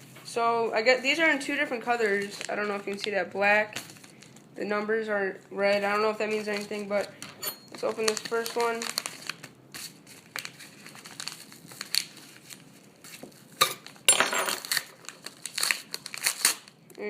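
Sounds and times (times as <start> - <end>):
packaging crinkling: 2.0 - 4.5, 5.7 - 16.8.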